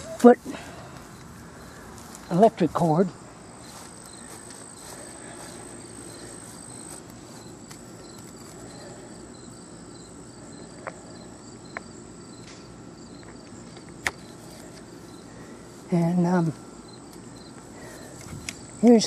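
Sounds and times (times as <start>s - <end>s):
insects chirping: 0.0s - 19.0s.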